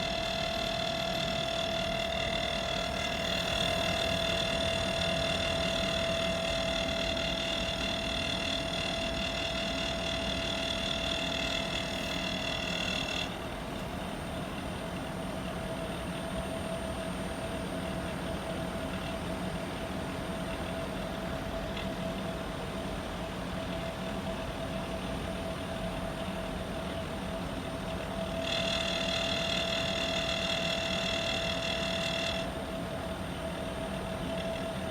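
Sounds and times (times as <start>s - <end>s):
high whining tone: 0.0s - 13.4s
air conditioner unit humming: 0.0s - 34.9s.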